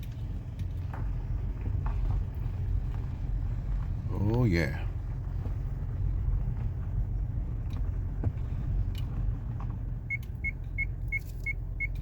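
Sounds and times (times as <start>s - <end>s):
car cabin rumble: 0.0s - 12.0s
dashboard warning chime beeping: 10.1s - 12.0s.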